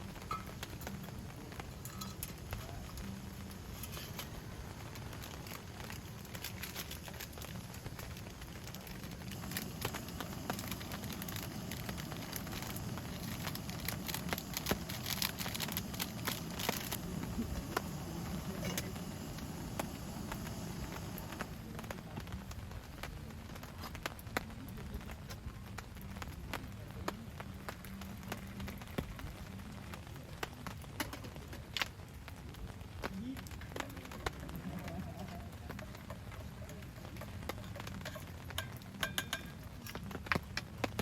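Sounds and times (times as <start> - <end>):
raindrops pattering on a tent: 0.0 - 41.0
steady hiss of rain: 0.0 - 41.0.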